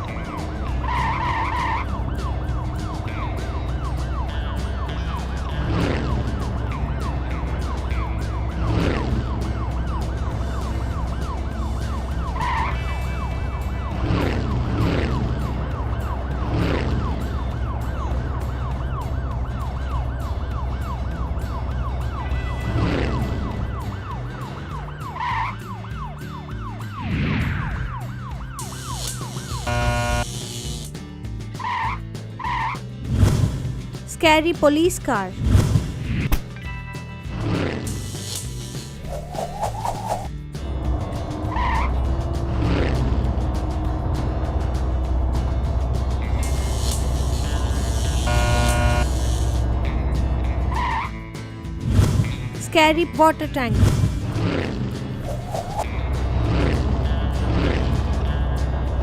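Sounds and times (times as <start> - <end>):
warbling siren-like tone: 15.0 - 30.2
long falling whooshes: 39.0 - 40.3, 55.2 - 55.8.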